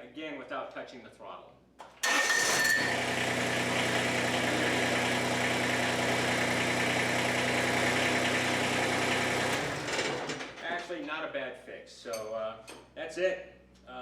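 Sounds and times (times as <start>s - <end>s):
starter motor whine: 2.0s - 10.7s
diesel tractor engine idling: 2.1s - 10.6s.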